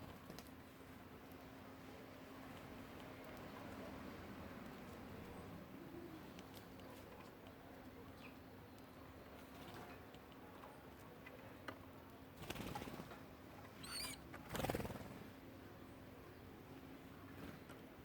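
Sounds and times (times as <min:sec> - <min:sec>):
light clicks and rustle: 0:00.0 - 0:00.6, 0:06.3 - 0:07.6
wing flapping: 0:12.4 - 0:13.2, 0:13.8 - 0:15.4.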